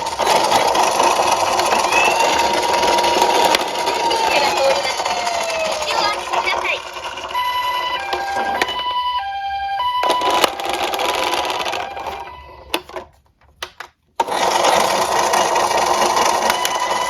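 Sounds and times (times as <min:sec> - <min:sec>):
toy car wheels rattling: 0:00.0 - 0:09.1, 0:09.8 - 0:13.2, 0:14.2 - 0:17.0
two-tone siren: 0:01.6 - 0:12.8.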